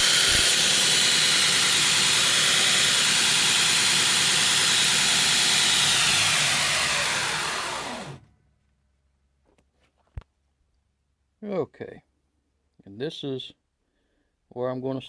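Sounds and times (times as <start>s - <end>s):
belt grinder running: 0.0s - 8.2s
motor winding down: 0.0s - 8.3s.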